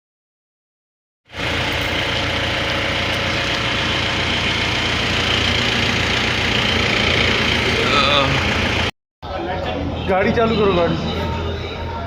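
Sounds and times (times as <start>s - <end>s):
diesel engine idling: 1.3s - 12.0s.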